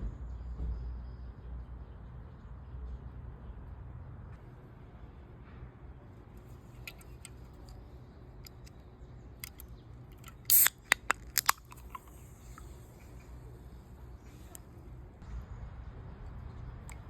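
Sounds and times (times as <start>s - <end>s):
small sharp clicks: 8.4s - 8.8s, 9.4s - 12.7s.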